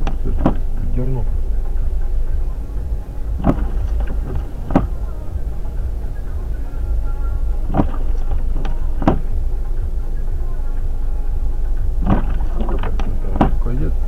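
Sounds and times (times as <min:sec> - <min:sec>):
car engine and road noise: 0:00.0 - 0:14.0.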